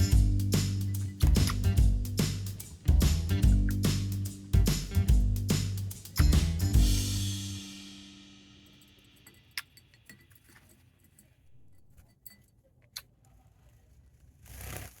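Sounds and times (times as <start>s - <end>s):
background music chord: 3.1s - 9.0s.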